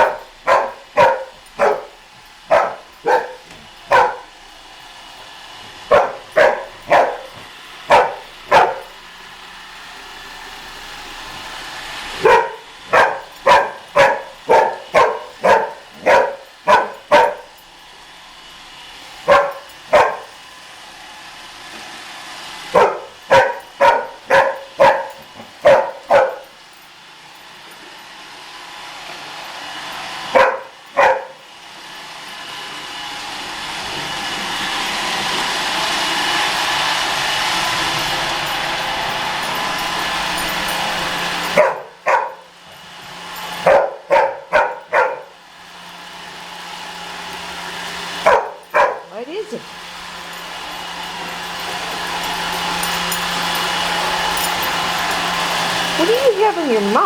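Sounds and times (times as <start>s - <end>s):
young dog barking: 0.0s - 4.3s, 5.9s - 9.0s, 12.2s - 17.6s, 19.3s - 20.3s, 22.7s - 26.5s, 30.3s - 31.4s, 41.5s - 42.5s, 43.6s - 45.4s, 48.2s - 49.6s
vacuum motor hum: 0.0s - 57.0s.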